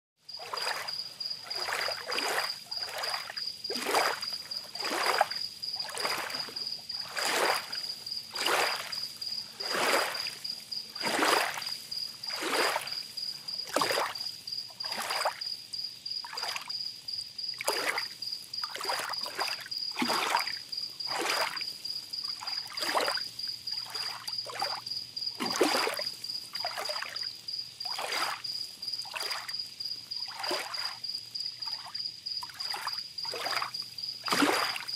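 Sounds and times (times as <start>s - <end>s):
cricket trilling: 0.2s - 34.9s
sea waves lapping at shore: 0.4s - 15.5s, 17.6s - 24.8s, 25.4s - 27.2s, 27.8s - 29.6s, 30.2s - 31.0s, 31.6s - 34.9s.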